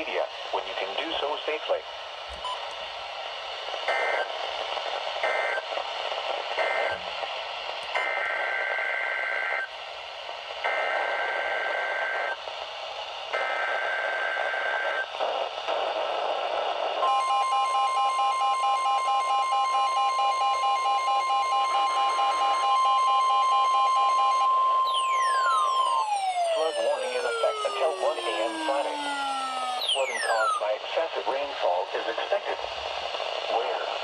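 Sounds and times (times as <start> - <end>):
radio hiss: 0.0 - 17.0, 25.0 - 34.0
steady warning alarm tone: 17.0 - 30.6
two-tone electronic data bursts: 26.7 - 30.6.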